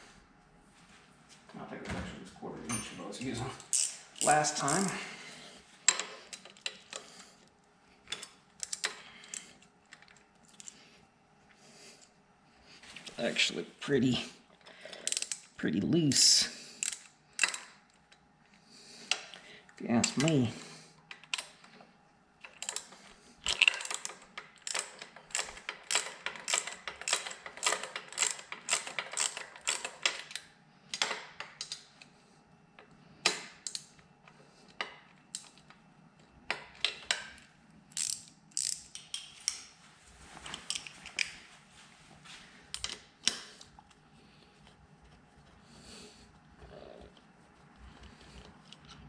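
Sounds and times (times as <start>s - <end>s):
socket ratchet clicking: 3.7s - 4.9s, 16.8s - 17.7s, 23.5s - 30.4s, 37.9s - 39.6s.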